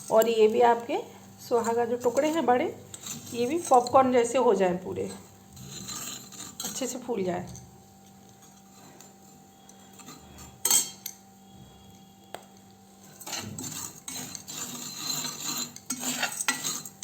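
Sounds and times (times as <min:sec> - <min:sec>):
spoon scraping and stirring: 0:00.0 - 0:17.0.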